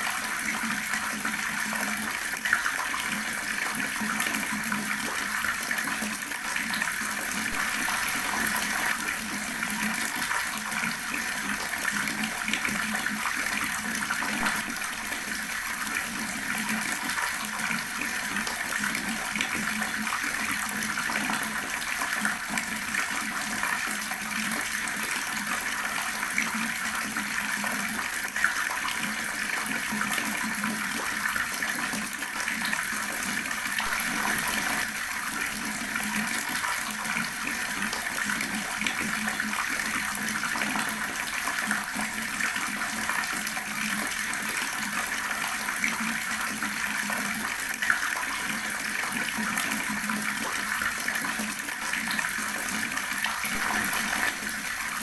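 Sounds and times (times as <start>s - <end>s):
water running from a tap: 0.0s - 55.0s
sharp water splash: 33.8s - 35.2s, 53.4s - 54.7s.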